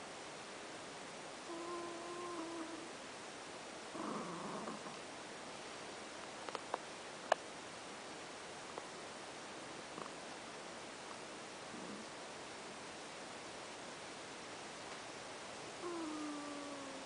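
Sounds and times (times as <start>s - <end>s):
cat snoring: 1.4s - 2.9s, 3.9s - 5.0s, 11.7s - 12.1s, 15.8s - 17.0s.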